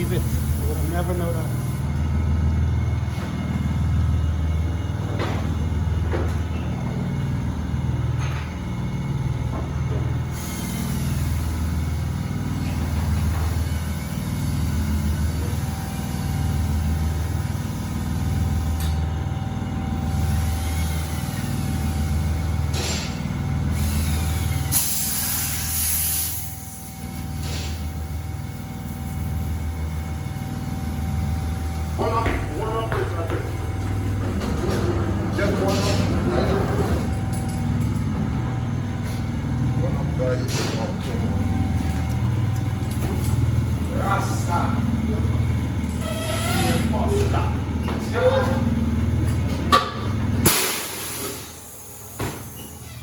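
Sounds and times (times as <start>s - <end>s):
low machine hum: 0.0s - 53.0s
compressed air hissing: 10.3s - 12.2s, 20.1s - 29.5s.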